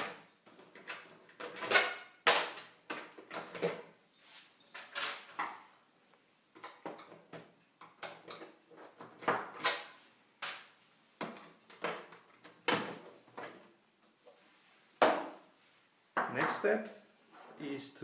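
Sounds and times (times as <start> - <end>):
plastic and metal parts clattering: 0.0 - 3.9.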